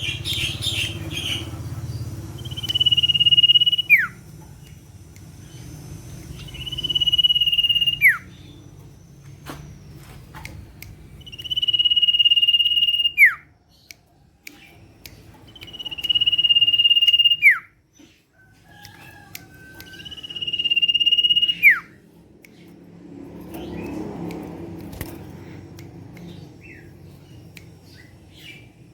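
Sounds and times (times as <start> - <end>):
bird trilling whistle: 2.4 - 4.2, 6.3 - 8.7, 11.2 - 13.5, 15.5 - 17.8, 19.6 - 22.0.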